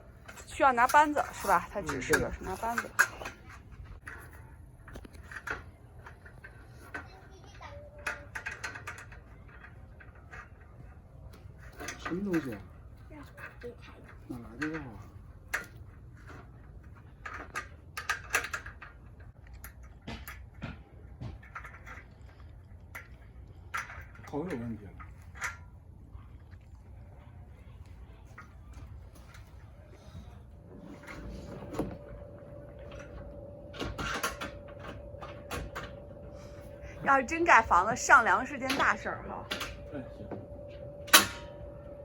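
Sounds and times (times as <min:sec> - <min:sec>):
hardware and tools clattering: 0:00.2 - 0:07.2, 0:29.2 - 0:42.0
faint steady hum: 0:25.0 - 0:42.0.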